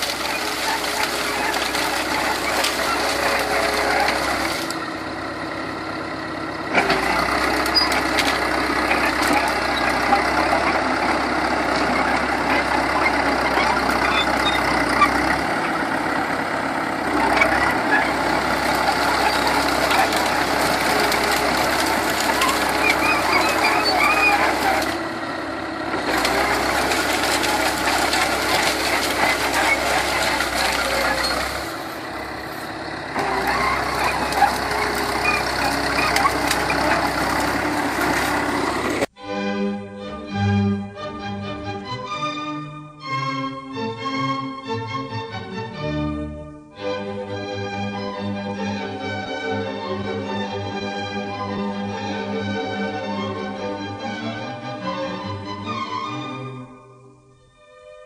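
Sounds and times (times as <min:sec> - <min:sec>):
brush crackling: 0:00.0 - 0:04.9, 0:06.9 - 0:39.1
bulldozer engine under load: 0:00.0 - 0:39.6, 0:40.6 - 0:57.4.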